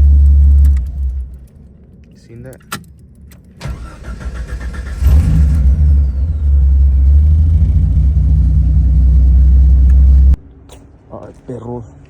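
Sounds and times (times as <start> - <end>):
engine cranking and running: 3.6 - 10.4.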